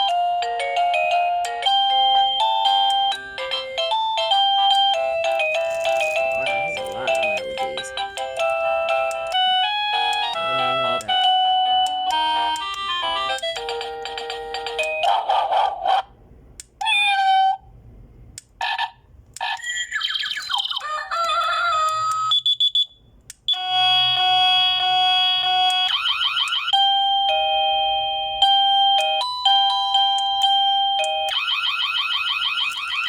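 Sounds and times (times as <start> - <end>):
doorbell chime melodies: 0.0 - 15.0, 26.7 - 31.3
held electronic chord: 4.6 - 14.1
fast repeating warble: 19.4 - 21.1.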